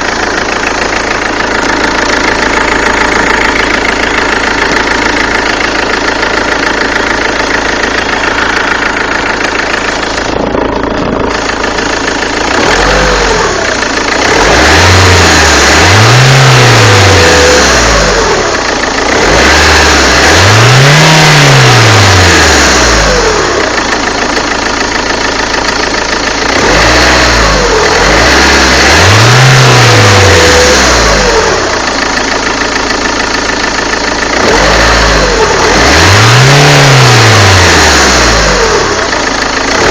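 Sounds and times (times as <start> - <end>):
diesel engine idling and revving: 0.0 - 39.9.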